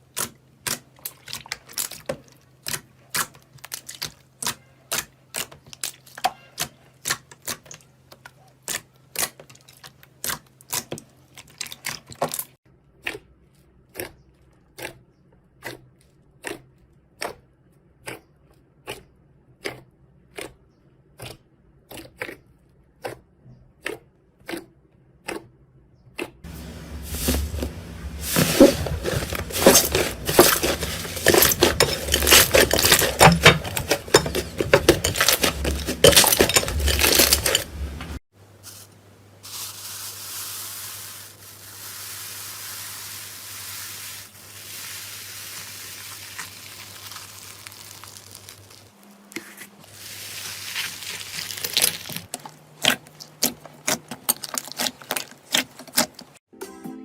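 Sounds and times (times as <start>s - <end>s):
slime crackling and crunching: 44.0s - 49.0s, 49.9s - 56.1s.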